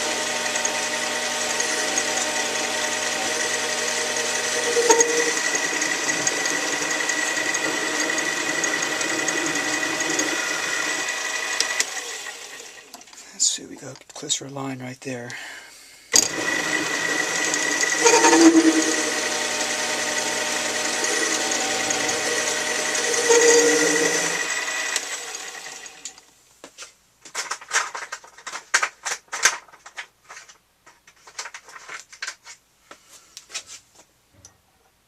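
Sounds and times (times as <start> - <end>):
metal lathe motor whine: 0.0 - 12.9, 16.2 - 26.2.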